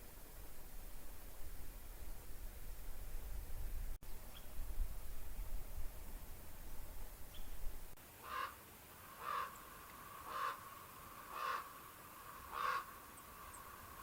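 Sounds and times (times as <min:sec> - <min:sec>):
bird calling: 0:08.2 - 0:14.0.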